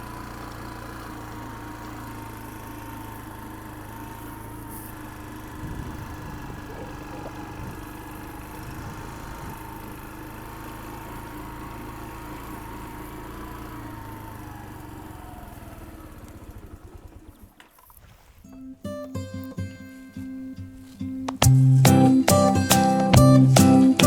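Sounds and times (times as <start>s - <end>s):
motor whining: 0.0s - 18.0s.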